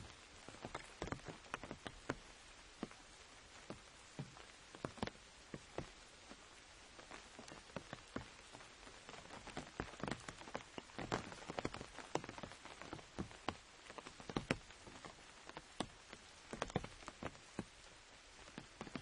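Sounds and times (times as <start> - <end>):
rain pattering on an umbrella: 0.0 - 19.0.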